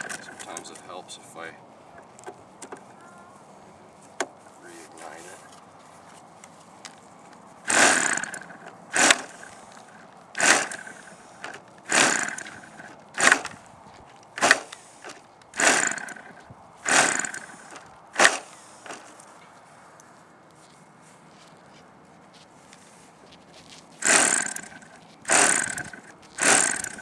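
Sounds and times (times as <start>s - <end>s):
small engine being cranked: 0.0s - 0.9s, 2.0s - 3.1s, 7.7s - 19.3s, 24.0s - 27.0s.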